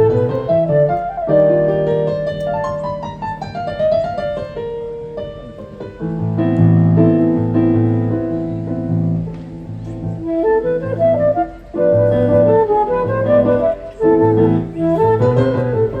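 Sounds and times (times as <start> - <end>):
instrumental ensemble playing: 0.0 - 3.8, 9.3 - 16.0.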